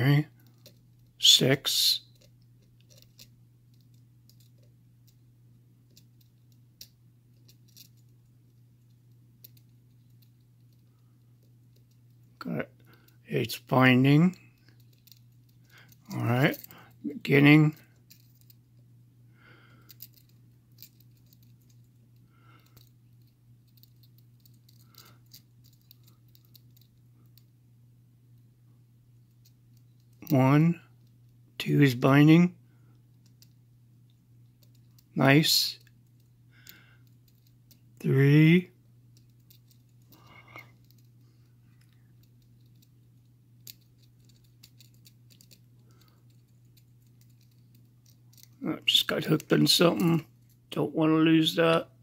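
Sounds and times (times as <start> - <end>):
low steady hum: 0.0 - 52.0
lock pick scratching and clicking: 2.1 - 5.2, 41.8 - 48.6.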